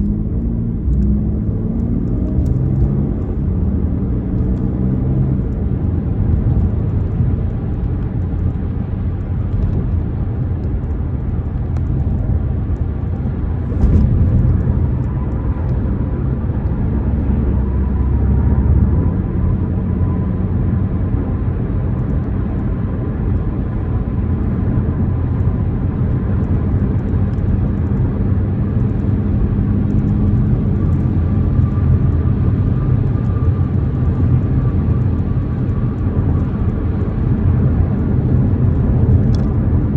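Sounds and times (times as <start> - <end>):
car engine and road rumble: 0.0 - 39.9.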